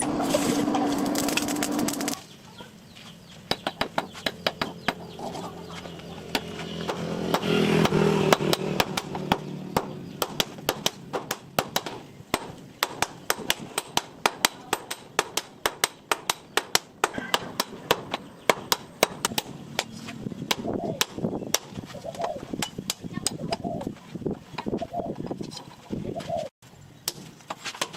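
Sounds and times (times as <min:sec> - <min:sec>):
chickens clucking: 0:04.6 - 0:06.3
rooster crowing: 0:17.1 - 0:17.5.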